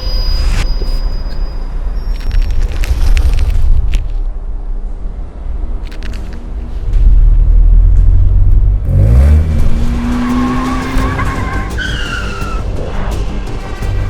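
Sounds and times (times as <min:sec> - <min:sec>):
car engine revving: 0:05.0 - 0:14.0
tyres squealing: 0:08.9 - 0:14.0.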